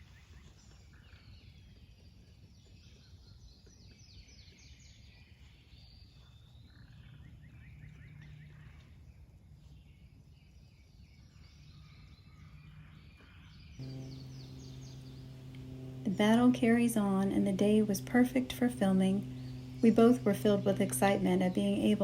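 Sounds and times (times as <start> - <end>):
distant birds chirping: 0.0 - 22.0
steady low hum: 13.8 - 22.0.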